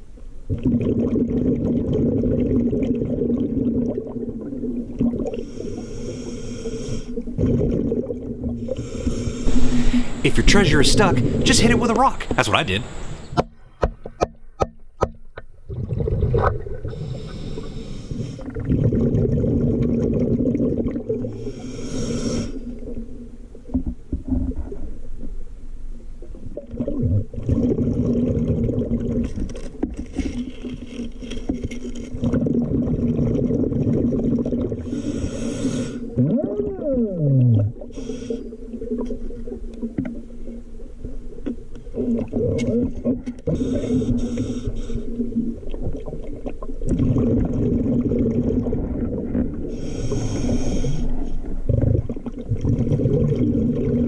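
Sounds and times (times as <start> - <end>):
exhaled bubbles rumbling: 0.0 - 5.8, 7.1 - 13.3, 15.6 - 21.7, 26.2 - 35.2, 36.0 - 38.0, 38.6 - 54.0
scuba regulator inhalation hiss: 5.4 - 7.2, 8.8 - 10.3, 16.9 - 18.4, 21.4 - 22.7, 34.9 - 36.1, 37.9 - 38.6, 43.5 - 45.2, 49.7 - 51.4.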